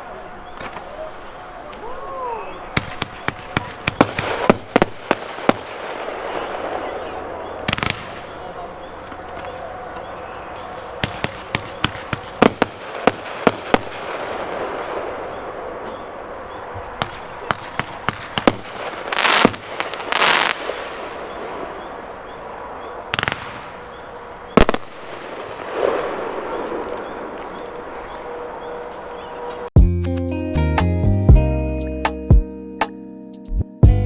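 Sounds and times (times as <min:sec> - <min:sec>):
firework cake firing: 0:00.6 - 0:09.9, 0:10.9 - 0:22.0
loud crackling bursts: 0:02.7 - 0:28.9.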